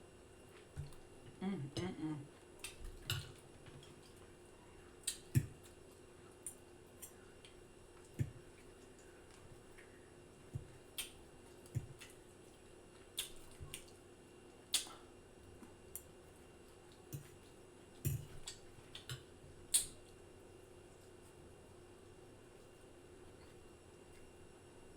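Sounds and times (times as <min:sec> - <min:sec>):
mouth chewing with lip smacks: 0:10.7 - 0:20.2.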